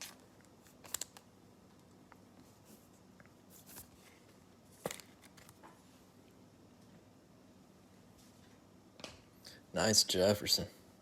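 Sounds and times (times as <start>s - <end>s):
trading cards clicking and rustling: 0.0s - 1.9s, 4.8s - 5.8s.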